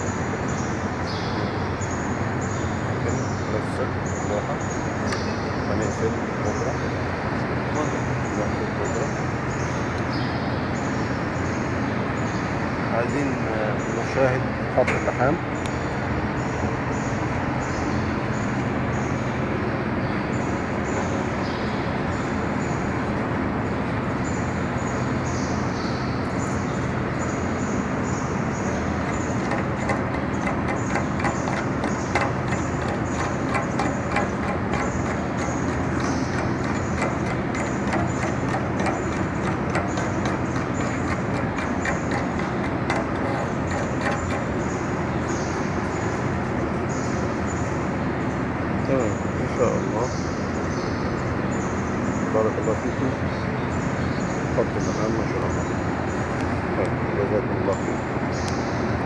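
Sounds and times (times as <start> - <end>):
machine hum with electrical buzz: 26.6 - 47.3
small clicks and taps: 29.0 - 44.7.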